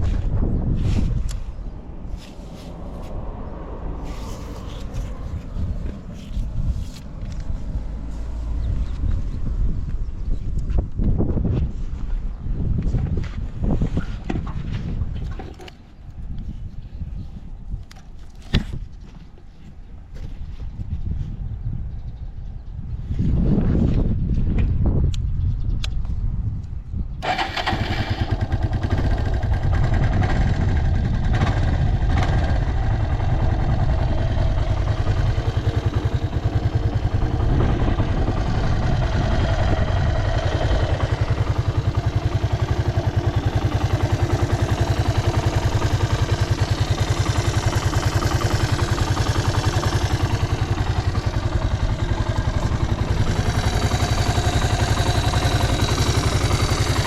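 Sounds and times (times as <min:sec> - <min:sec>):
single-cylinder engine idling: 0:27.2 - 0:57.0.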